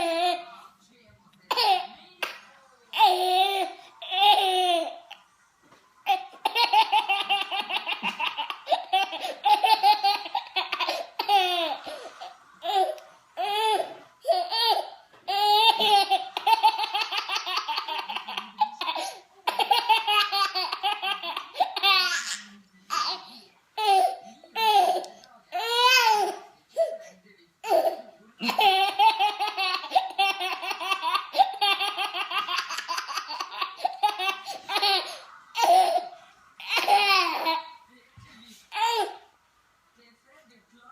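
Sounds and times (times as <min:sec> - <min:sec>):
baby giggling: 0:01.5 - 0:02.0, 0:06.0 - 0:23.2, 0:27.6 - 0:37.7.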